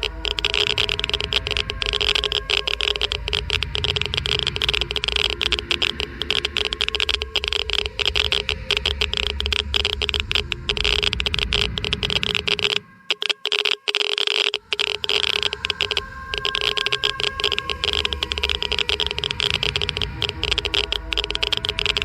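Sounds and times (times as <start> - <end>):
low rumble: 0.0 - 13.1
geiger counter clicking rapidly: 0.0 - 22.0.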